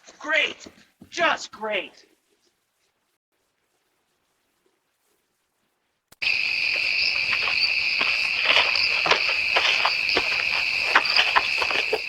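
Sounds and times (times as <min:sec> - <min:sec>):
crickets chirping: 0:06.2 - 0:12.0.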